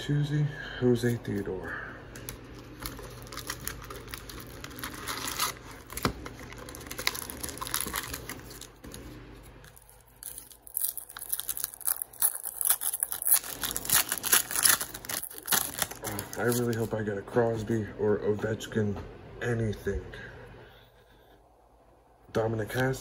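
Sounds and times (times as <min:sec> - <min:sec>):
wrapper tearing and crinkling: 0:02.2 - 0:17.0.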